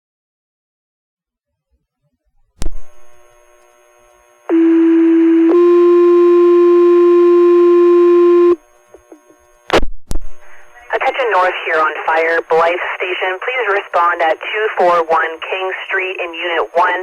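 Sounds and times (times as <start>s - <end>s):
radio transmitter clicks: 2.6s - 3.8s, 8.8s - 16.9s
two-tone radio page: 9.7s - 17.0s.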